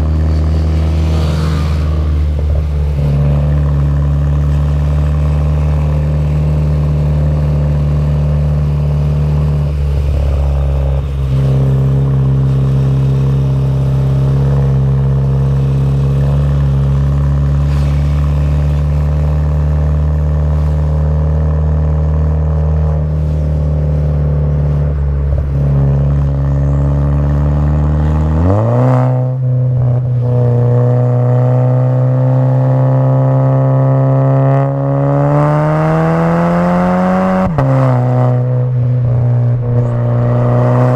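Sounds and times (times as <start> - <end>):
turbocharged car engine revving: 0.0 - 40.9.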